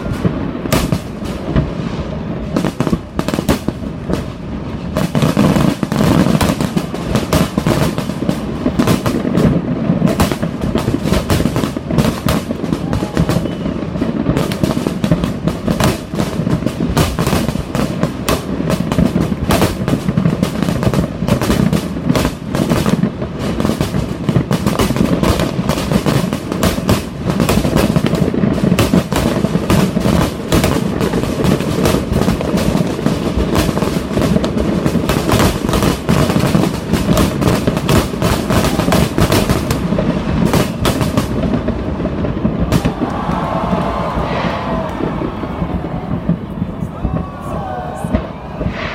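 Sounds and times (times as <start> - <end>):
fireworks bangs and crackles: 0.0 - 48.9.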